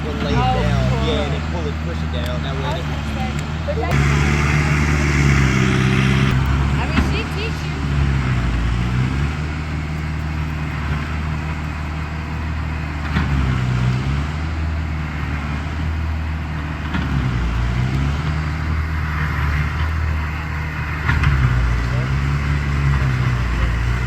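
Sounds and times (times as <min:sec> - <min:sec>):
bulldozer diesel engine under load: 0:00.0 - 0:24.0.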